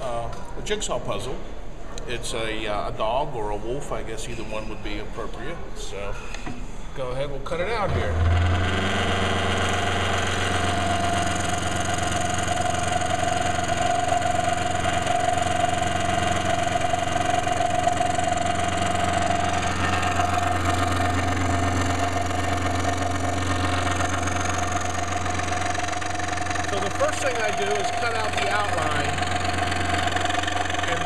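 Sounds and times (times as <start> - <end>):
power saw cutting wood: 7.9 - 31.0.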